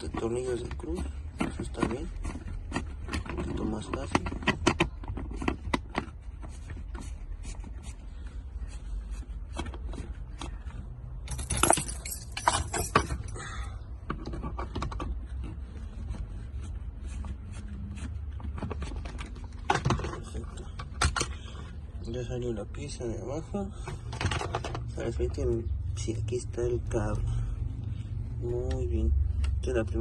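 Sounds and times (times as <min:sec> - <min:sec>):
small parts clicking and rattling: 0:11.2 - 0:13.4.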